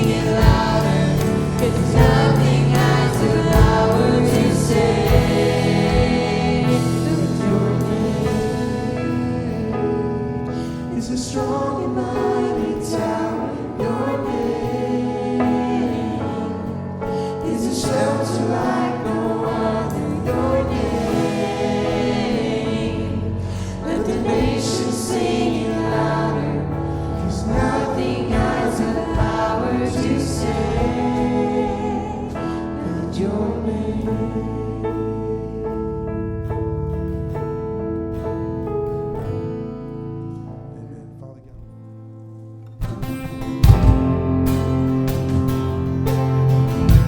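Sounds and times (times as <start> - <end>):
worship band playing: 0.0 - 34.8, 43.6 - 47.0
group of voices singing: 0.0 - 36.0.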